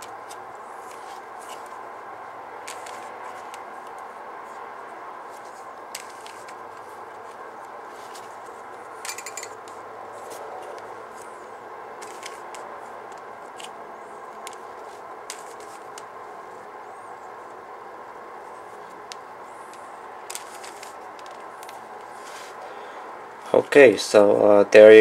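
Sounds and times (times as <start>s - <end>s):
background noise: 0.0s - 25.0s
puzzle cube plastic clicks: 2.6s - 4.0s, 12.0s - 13.7s.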